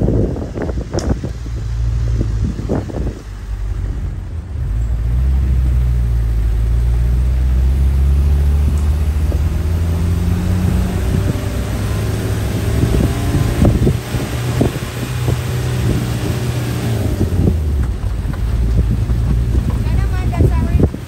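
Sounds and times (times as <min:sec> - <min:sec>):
vehicle engine rumbling: 0:00.0 - 0:21.0
short knocks and rattles: 0:17.8 - 0:20.4.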